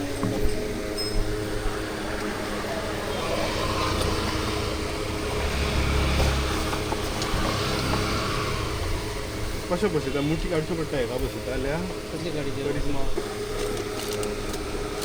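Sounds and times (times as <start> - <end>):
street traffic: 0.0 - 15.0
vehicle passing close by: 1.2 - 9.7.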